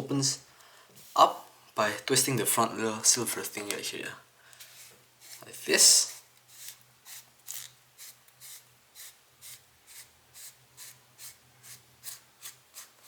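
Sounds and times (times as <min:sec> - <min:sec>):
faint rubbing strokes: 0:04.6 - 0:07.3.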